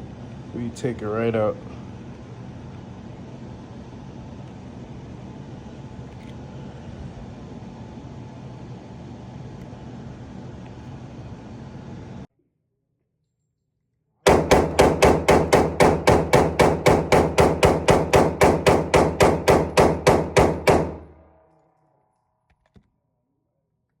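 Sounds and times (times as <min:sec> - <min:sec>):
pistol shots rapid fire: 0:14.3 - 0:21.1.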